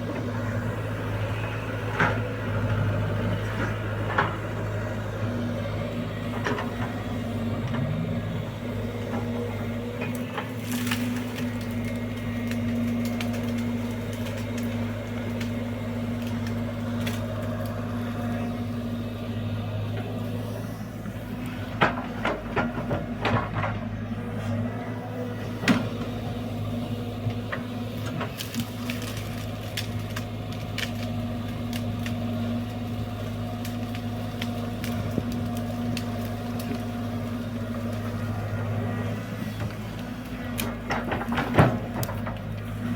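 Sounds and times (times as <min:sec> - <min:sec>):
diesel engine running: 0:00.0 - 0:42.9
excavator digging knocks: 0:21.6 - 0:23.9, 0:25.4 - 0:26.6, 0:40.6 - 0:42.6.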